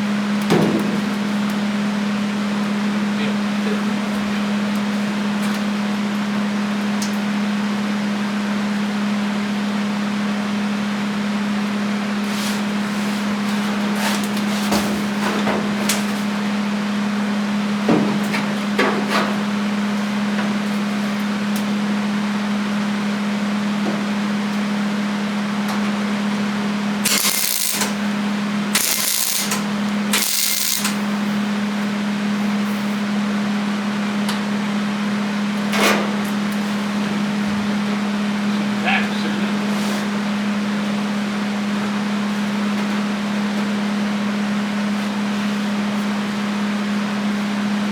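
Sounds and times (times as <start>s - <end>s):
steady low hum: 11.0s - 41.7s.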